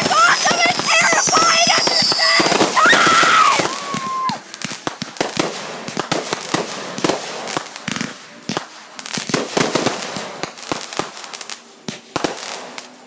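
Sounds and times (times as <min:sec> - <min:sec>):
fireworks cracking and popping: 0:00.0 - 0:13.0
loud fireworks bangs: 0:00.0 - 0:13.0.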